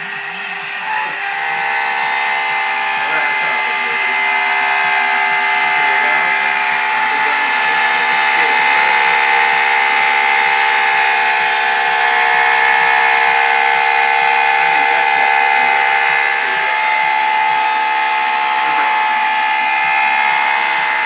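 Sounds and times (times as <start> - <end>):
machine motor whining: 0.0 - 21.0.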